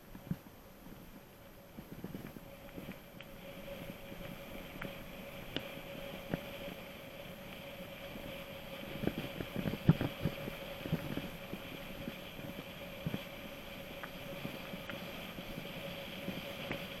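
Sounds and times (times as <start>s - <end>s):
bike tyres humming on rough ground: 0.0s - 17.0s.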